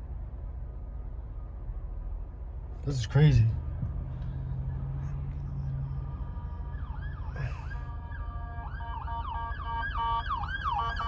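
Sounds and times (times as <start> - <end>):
low steady rumble: 0.0 - 11.0
police sirens wailing: 4.6 - 11.0.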